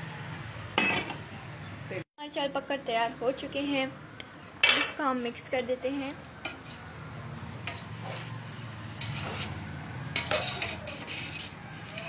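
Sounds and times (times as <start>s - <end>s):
spoon scraping and knocking pot: 6.4s - 6.9s, 7.6s - 12.0s.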